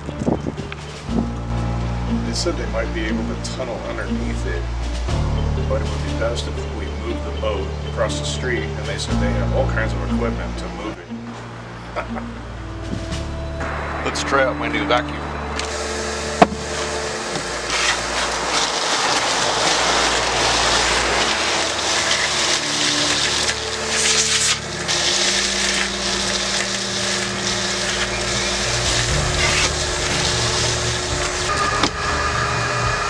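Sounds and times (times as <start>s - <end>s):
shop vacuum running: 15.2s - 33.0s
debris rattling up a hose: 15.6s - 33.0s.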